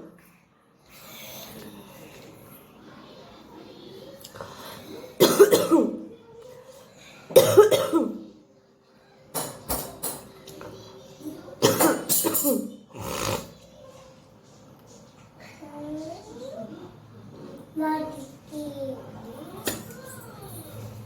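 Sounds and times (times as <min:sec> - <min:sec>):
woman coughing: 0:05.2 - 0:06.0, 0:07.3 - 0:08.2, 0:11.6 - 0:12.8.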